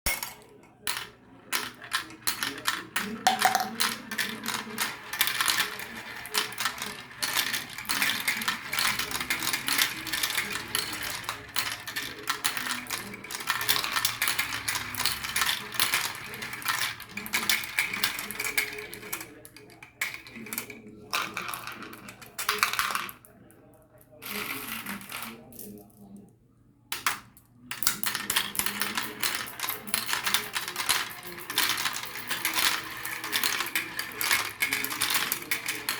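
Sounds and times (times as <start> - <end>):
marbles clattering down a track: 0.1 - 23.3, 27.7 - 35.9.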